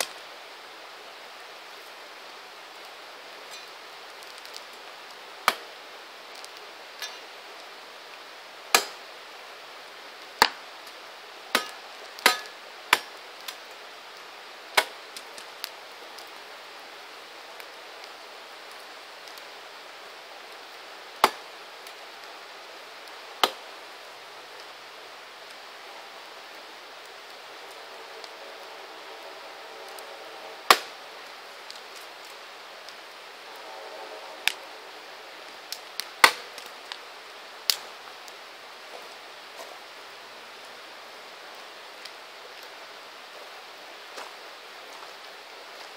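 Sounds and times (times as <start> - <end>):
fire pops and cracks: 0.0 - 0.3, 2.7 - 9.1, 10.1 - 16.5, 21.1 - 22.4, 23.0 - 23.7, 29.8 - 33.1, 34.4 - 34.6, 35.5 - 39.8
campfire hissing: 0.0 - 45.9.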